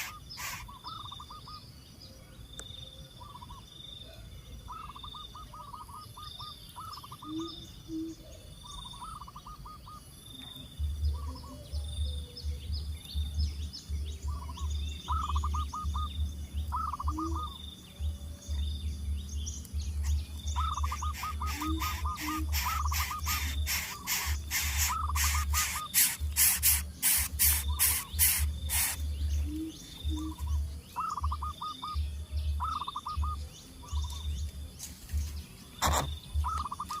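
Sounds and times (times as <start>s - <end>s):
bird rattling stuttering call: 0.0s - 1.2s, 20.0s - 29.1s
high bird chirps: 0.0s - 1.7s, 4.7s - 34.6s, 35.2s - 37.0s
rapid crackling noise: 19.6s - 29.4s.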